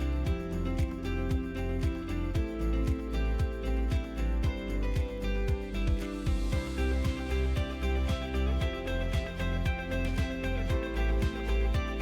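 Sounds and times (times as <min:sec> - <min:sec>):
deep drum beat: 0:04.4 - 0:12.0.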